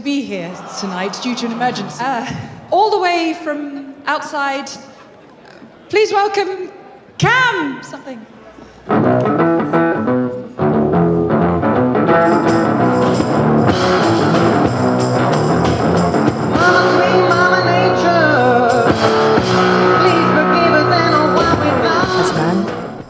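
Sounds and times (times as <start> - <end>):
man singing: 22.0 - 23.0.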